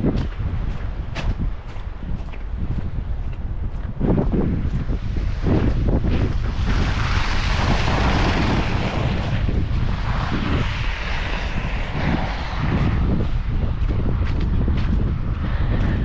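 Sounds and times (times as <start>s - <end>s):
wind rumble on microphone: 0.0s - 16.0s
vehicle passing on highway: 4.2s - 16.0s.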